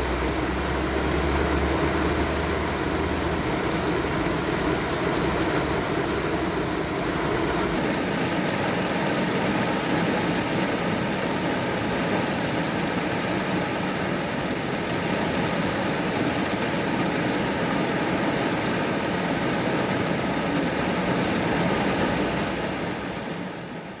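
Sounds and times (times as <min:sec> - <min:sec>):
low rumble: 0:00.0 - 0:07.8
steady rain falling: 0:00.0 - 0:24.0.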